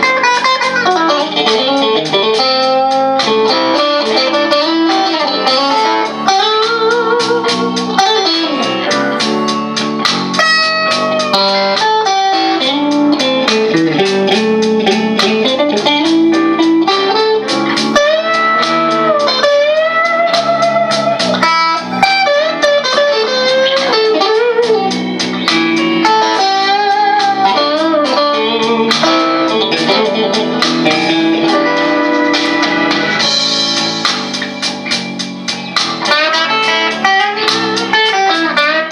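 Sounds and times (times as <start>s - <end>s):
blues backing track: 0.0s - 38.9s
electric guitar blues lead: 0.0s - 38.9s.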